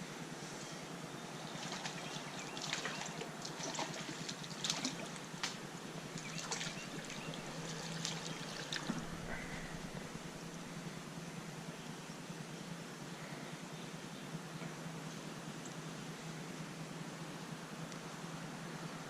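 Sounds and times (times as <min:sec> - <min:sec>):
creek water flowing: 0:01.0 - 0:11.7.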